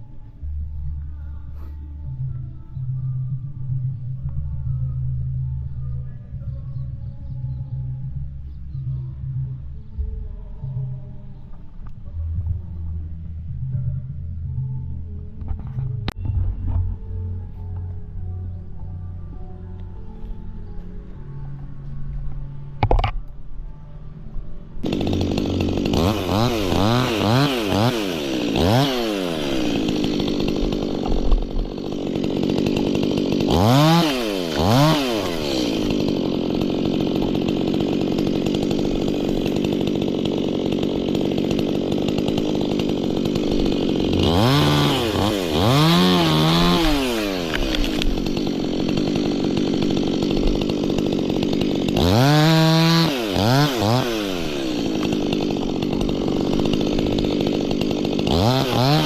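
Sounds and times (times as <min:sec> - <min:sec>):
chainsaw idling: 0:24.8 - 0:59.0
chainsaw throttle revs: 0:24.8 - 0:59.0.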